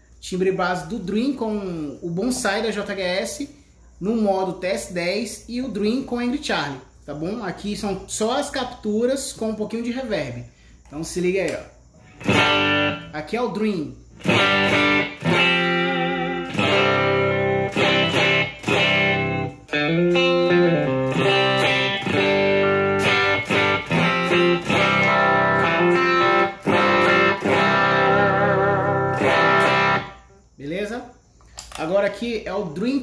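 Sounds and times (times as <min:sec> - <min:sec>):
electric guitar with reverb: 0:12.1 - 0:13.1, 0:14.2 - 0:30.3.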